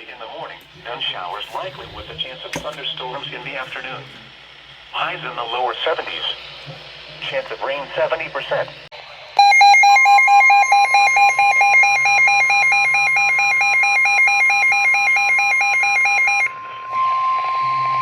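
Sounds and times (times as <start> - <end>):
steady warning alarm tone: 9.4 - 18.0.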